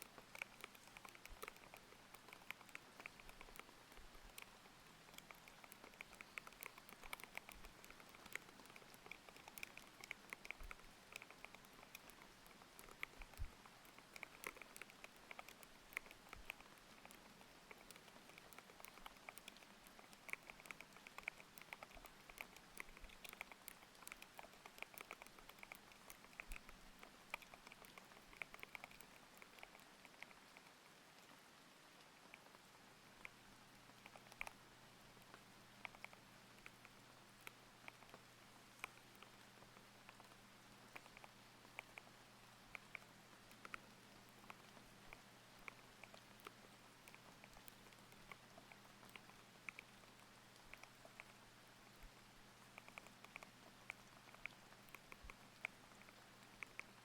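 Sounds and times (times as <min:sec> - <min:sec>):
mechanical keyboard typing: 0:00.0 - 0:30.4.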